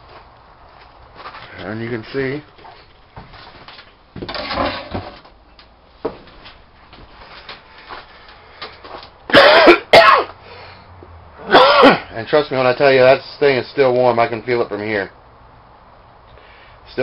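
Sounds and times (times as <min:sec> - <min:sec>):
man coughing: 0:09.3 - 0:10.3, 0:11.5 - 0:12.1.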